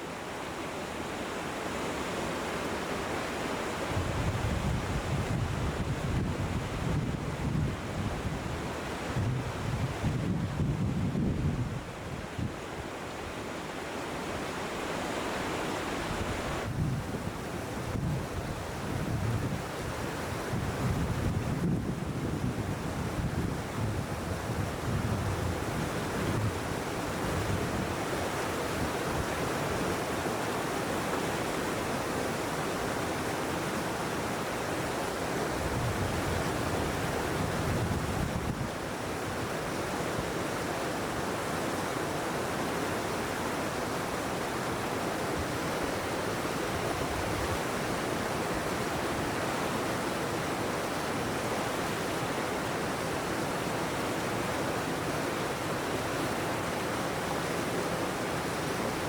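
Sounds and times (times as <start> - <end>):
flowing water rushing: 0.0 - 59.0
wind gusting on microphone: 3.9 - 12.7, 15.6 - 29.5, 35.5 - 39.0.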